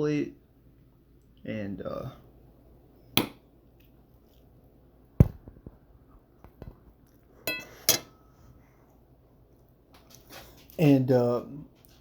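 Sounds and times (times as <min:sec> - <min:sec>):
ringing clink of plate: 0:07.5 - 0:08.2.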